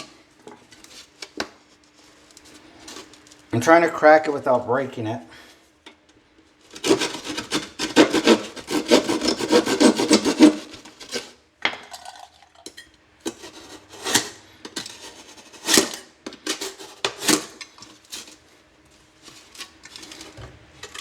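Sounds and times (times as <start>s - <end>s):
hand saw cutting drywall: 6.7s - 11.4s, 13.3s - 17.6s.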